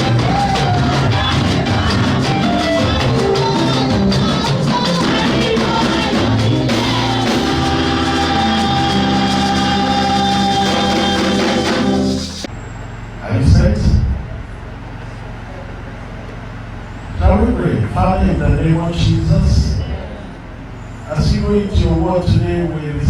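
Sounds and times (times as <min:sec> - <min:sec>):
long held chords: 0:00.0 - 0:12.5
music with percussive beat: 0:00.0 - 0:12.5.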